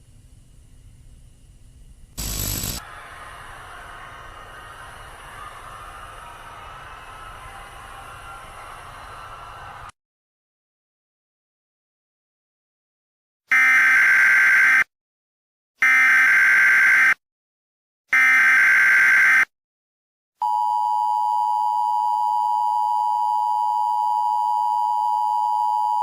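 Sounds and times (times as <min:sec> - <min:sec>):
buzzy digital header bursts: 0:02.2 - 0:02.8.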